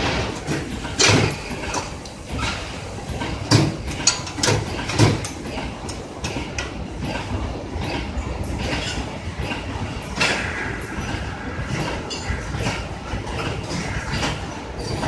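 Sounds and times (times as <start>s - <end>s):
steady machine noise: 5.4s - 15.0s.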